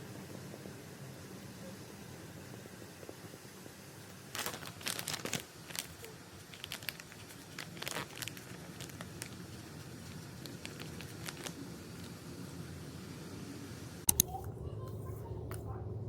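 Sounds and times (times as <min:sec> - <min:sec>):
packaging crinkling and rustling: 0:04.0 - 0:12.2
small clicks: 0:14.1 - 0:14.3.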